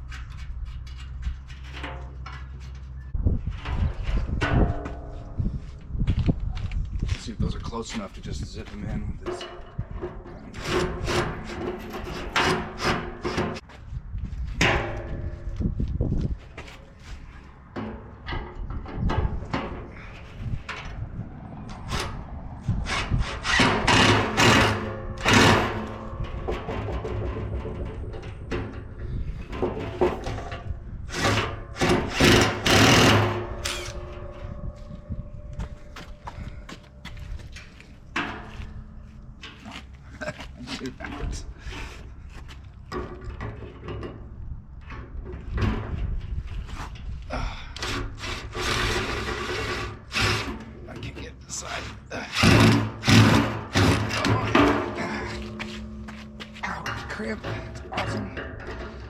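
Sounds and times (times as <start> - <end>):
metal parts scraping against drum: 9.0 - 13.6, 22.8 - 34.7, 47.8 - 59.0.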